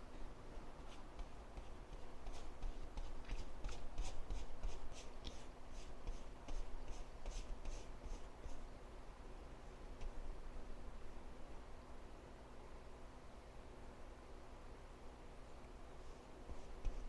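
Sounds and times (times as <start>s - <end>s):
paintbrush strokes: 0.0s - 8.6s, 16.0s - 17.0s.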